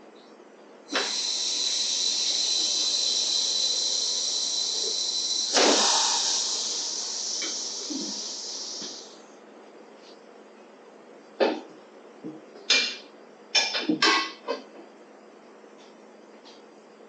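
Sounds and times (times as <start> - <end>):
compressed air hissing: 0.9 - 9.2
high whistle: 0.9 - 9.2.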